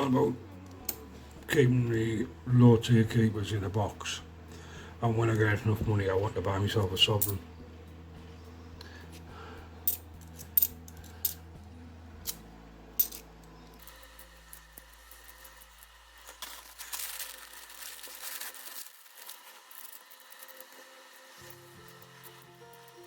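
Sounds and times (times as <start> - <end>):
coins clinking: 9.8 - 11.5, 13.0 - 23.0
coins shuffling: 9.8 - 11.5, 13.0 - 23.0.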